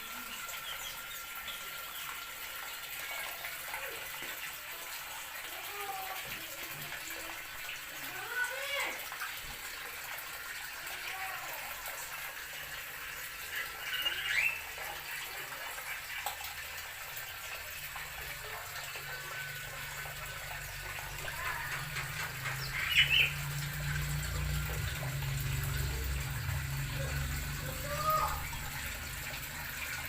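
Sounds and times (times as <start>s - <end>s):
running water hissing: 0.0s - 30.0s
bird chirp: 21.8s - 23.6s.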